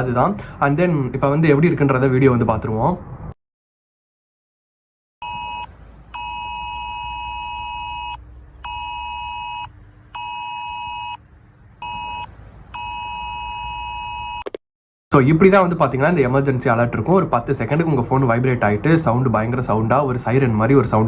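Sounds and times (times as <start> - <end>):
harsh two-pitched phone alarm: 5.2 - 11.2, 11.8 - 14.6.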